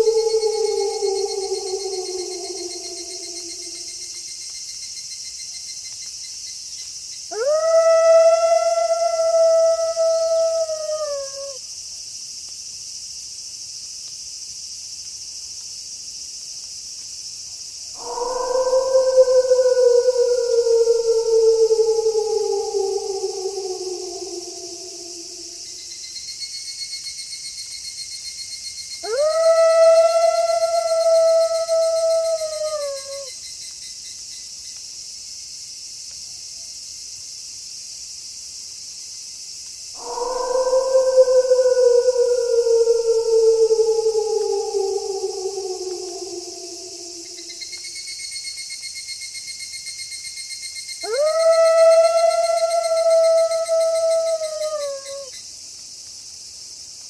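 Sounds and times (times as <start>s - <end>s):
wolf howling: 0.0s - 4.1s, 7.3s - 11.6s, 18.0s - 25.9s, 29.0s - 33.3s, 40.0s - 48.0s, 51.0s - 55.3s
crickets chirping: 0.0s - 57.0s.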